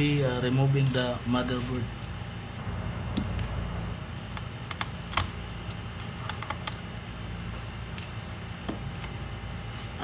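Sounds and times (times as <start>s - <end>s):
low steady hum: 2.0s - 5.7s.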